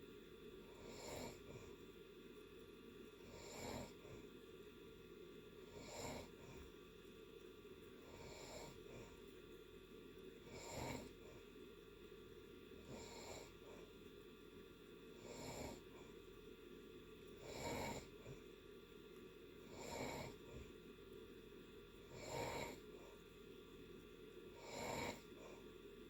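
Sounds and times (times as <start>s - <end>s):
person snoring: 0.7s - 1.5s, 3.2s - 4.0s, 5.7s - 6.5s, 8.1s - 8.8s, 10.5s - 11.2s, 12.8s - 13.6s, 15.2s - 15.9s, 17.4s - 18.2s, 19.7s - 20.5s, 22.1s - 22.8s, 24.6s - 25.4s.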